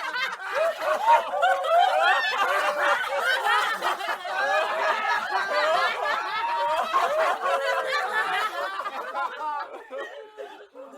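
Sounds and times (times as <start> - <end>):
group of people laughing: 0.0 - 10.9.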